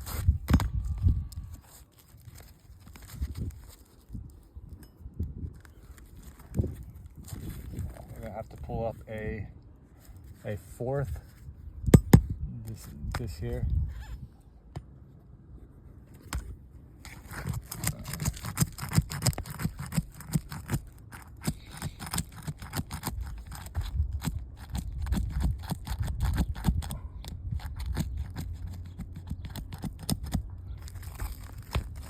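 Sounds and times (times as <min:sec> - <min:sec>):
roof shingles scraping and crackling: 0:01.4 - 0:04.1, 0:30.8 - 0:32.0.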